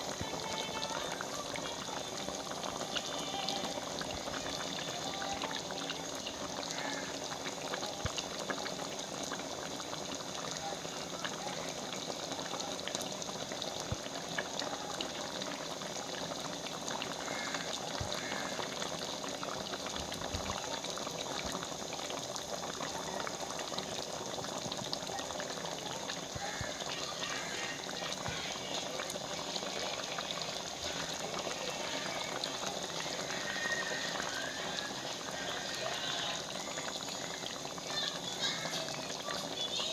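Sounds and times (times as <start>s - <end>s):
curry bubbling in a pot: 0.0s - 39.9s.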